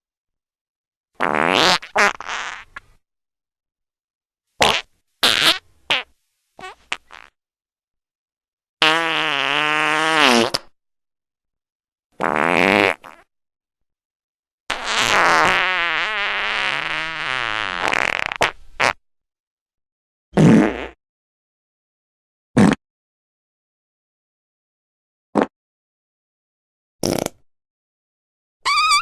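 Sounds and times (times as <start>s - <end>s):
fart sound effects: 1.2s - 2.7s, 4.6s - 7.4s, 8.8s - 10.8s, 12.2s - 13.3s, 14.7s - 19.0s, 20.4s - 21.0s, 22.6s - 22.8s, 27.0s - 27.4s, 28.7s - 29.0s.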